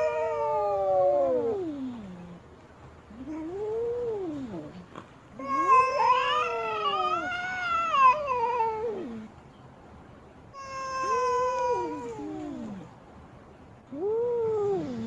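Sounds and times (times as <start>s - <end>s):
cat yowling: 0.0s - 2.2s, 3.2s - 4.8s, 5.4s - 9.3s, 10.6s - 12.9s.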